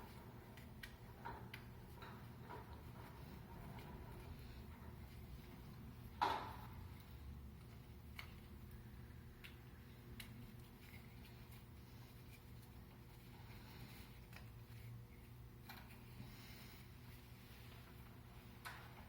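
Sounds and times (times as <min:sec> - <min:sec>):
low steady hum: 0:00.0 - 0:19.0
tools clicking and tapping: 0:00.1 - 0:04.3.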